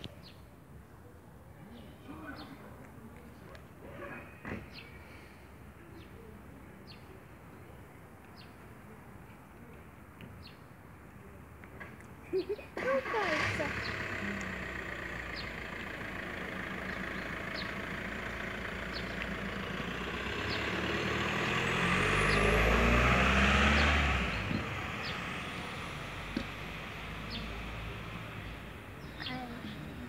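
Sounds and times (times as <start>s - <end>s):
vehicle engine passing by: 12.8s - 30.0s.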